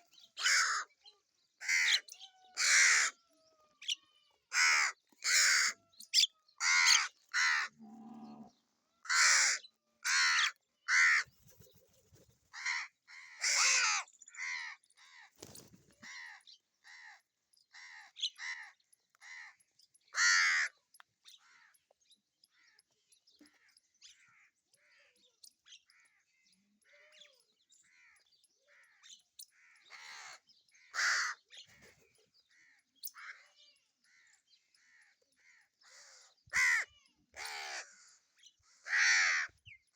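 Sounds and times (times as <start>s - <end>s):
crows cawing: 0.0s - 0.9s, 1.6s - 3.2s, 3.8s - 6.0s, 6.6s - 11.4s, 12.5s - 20.8s, 29.6s - 31.6s, 34.1s - 39.6s.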